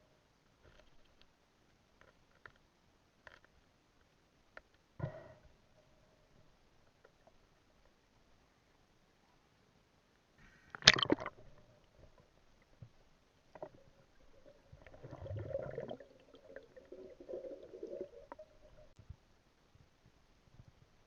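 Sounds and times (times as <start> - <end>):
water sloshing and gurgling: 10.8 - 19.0.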